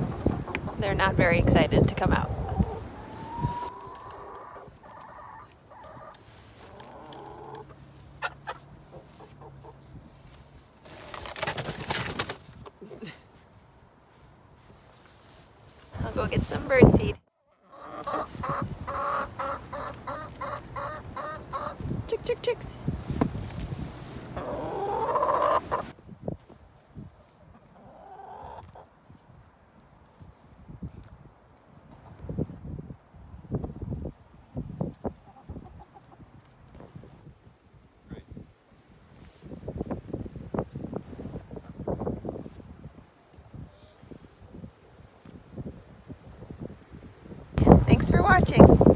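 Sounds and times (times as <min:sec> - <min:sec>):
chickens clucking: 0:00.0 - 0:09.8, 0:16.0 - 0:22.8, 0:24.3 - 0:25.9, 0:27.5 - 0:28.9, 0:35.2 - 0:36.3.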